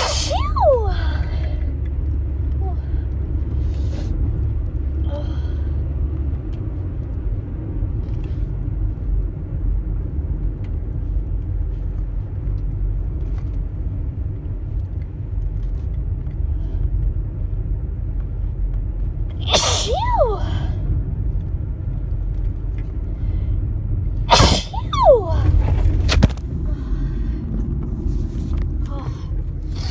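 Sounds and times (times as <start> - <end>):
woman sneezing: 0.0 - 1.1, 19.4 - 20.7, 24.3 - 25.9
steady low rumble: 0.0 - 29.9.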